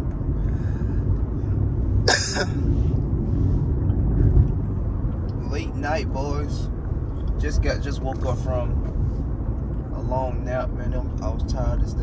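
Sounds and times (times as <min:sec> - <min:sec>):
car rumbling while driving: 0:00.0 - 0:12.0
person coughing: 0:02.1 - 0:02.7.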